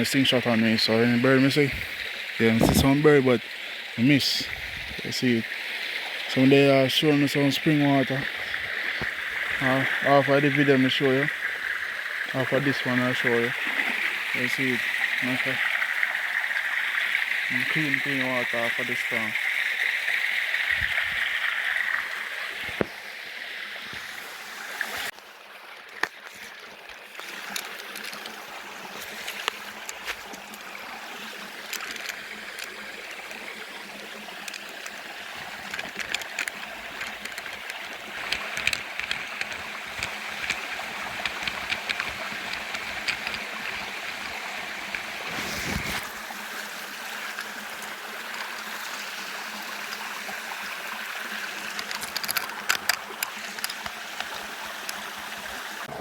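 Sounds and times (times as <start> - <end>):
stream trickling over rocks: 0.0 - 56.0
sharp clicks and knocks: 34.4 - 46.0, 51.7 - 54.4.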